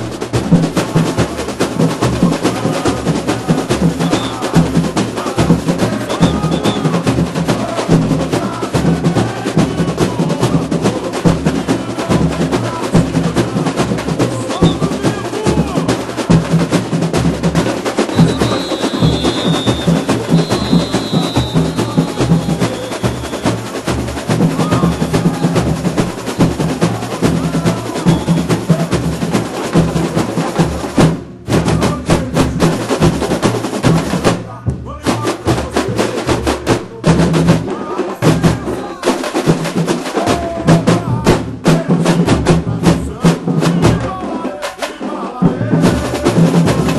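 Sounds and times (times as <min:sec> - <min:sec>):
samba drum section playing: 0:00.0 - 0:46.9
snare and tamborim strokes: 0:11.6 - 0:31.9.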